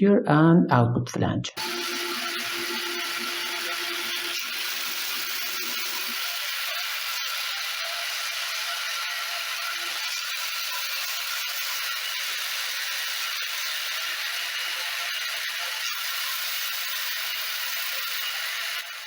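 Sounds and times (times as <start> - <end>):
electric motor driving plastic gears: 1.6 - 19.0.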